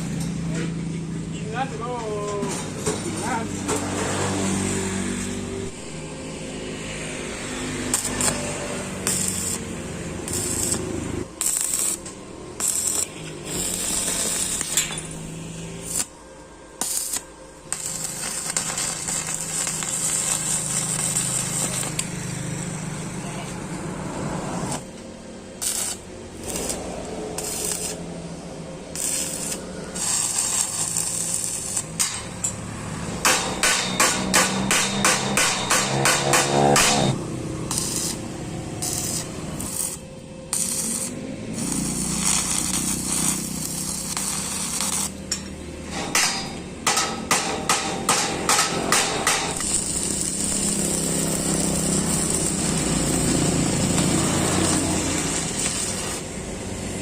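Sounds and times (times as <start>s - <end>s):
low mechanical hum: 0.0s - 57.0s
hammer ringing on metal: 33.2s - 37.1s, 45.3s - 49.6s.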